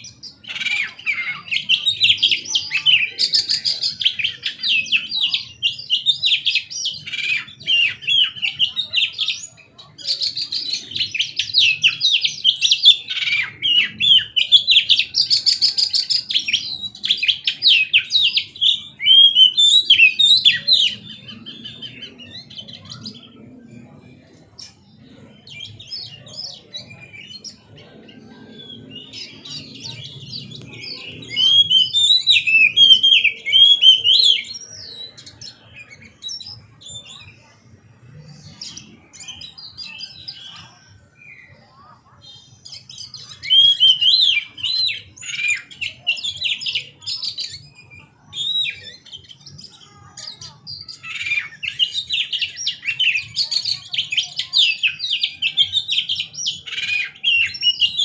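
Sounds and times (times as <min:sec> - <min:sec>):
bird singing whistled song: 0:10.1 - 0:23.2, 0:25.4 - 0:37.4, 0:42.6 - 0:49.8.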